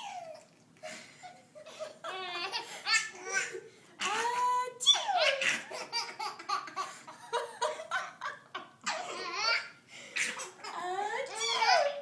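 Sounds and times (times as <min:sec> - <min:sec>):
baby laughing: 0:01.6 - 0:04.2, 0:04.9 - 0:08.0, 0:08.6 - 0:12.0.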